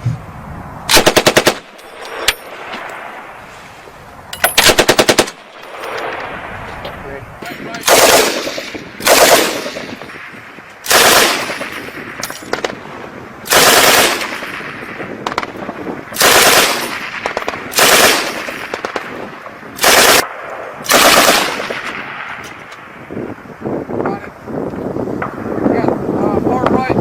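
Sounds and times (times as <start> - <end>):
machine gun bursts with echo: 0.9 - 2.3, 4.6 - 5.8, 7.8 - 15.6, 16.2 - 22.4.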